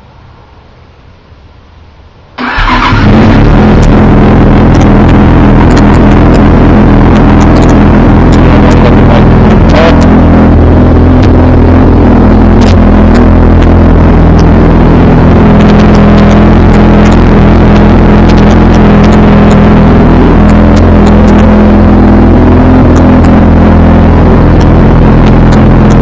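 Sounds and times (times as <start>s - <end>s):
motorcycle engine cranking: 2.4s - 3.6s
motorcycle engine idling: 2.6s - 26.0s.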